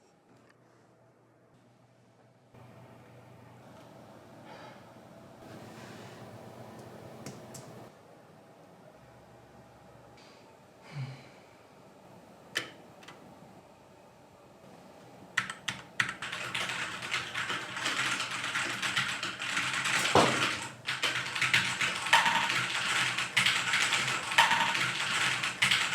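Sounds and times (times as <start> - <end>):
fast mechanical keyboard typing: 15.4 - 25.9.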